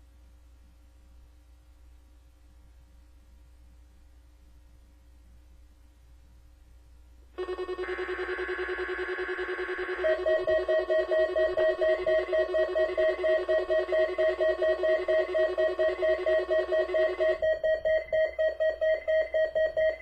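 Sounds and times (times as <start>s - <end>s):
alert alarm beeping rapidly: 7.4s - 20.0s
steady warning tone: 7.4s - 20.0s.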